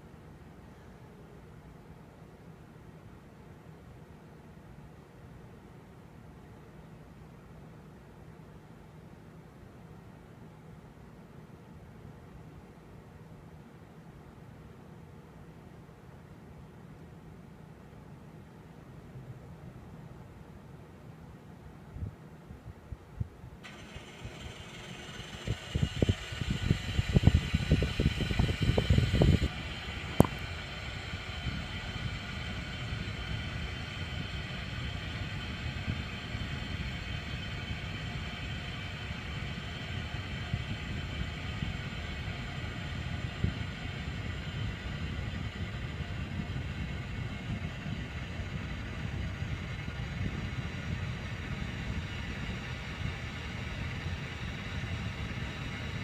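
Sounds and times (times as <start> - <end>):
air conditioner humming: 0.0 - 56.0
low rattling rumble: 23.6 - 56.0.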